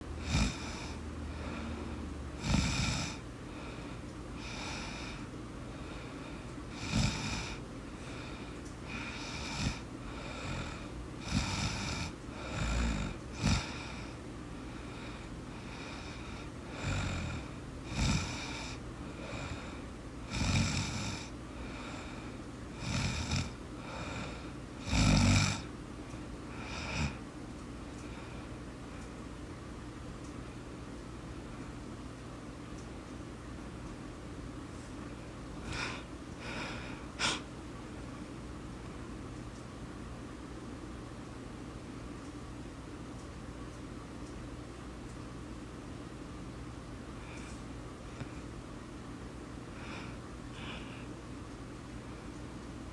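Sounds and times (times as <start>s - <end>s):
steady low hum: 0.0s - 52.9s
person snoring: 0.1s - 25.7s, 26.5s - 27.2s, 35.6s - 37.5s.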